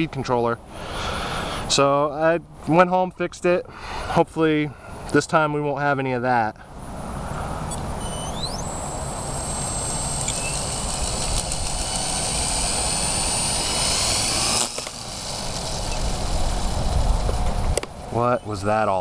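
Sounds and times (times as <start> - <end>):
low rough noise: 6.7 - 19.0
rc helicopter motor whine: 7.7 - 18.2
rotor noise rushing: 7.7 - 19.0.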